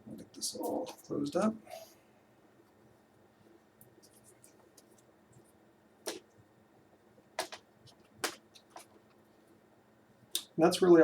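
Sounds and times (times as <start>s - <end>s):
plastic laptop case parts clicking: 7.4s - 8.9s.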